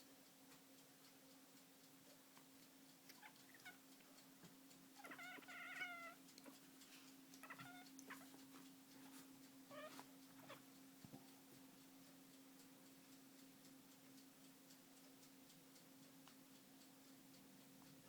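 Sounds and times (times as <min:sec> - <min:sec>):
cat chattering: 0:03.1 - 0:03.8, 0:05.0 - 0:06.6, 0:07.4 - 0:08.4.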